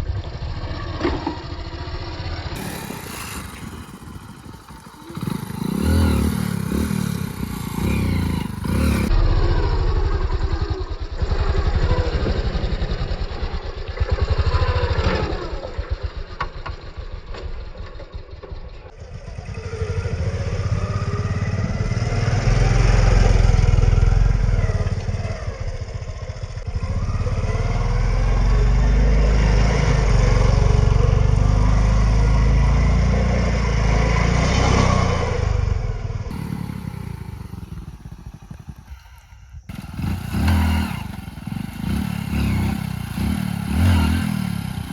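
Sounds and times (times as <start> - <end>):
motorcycle engine revving: 0.0 - 44.9.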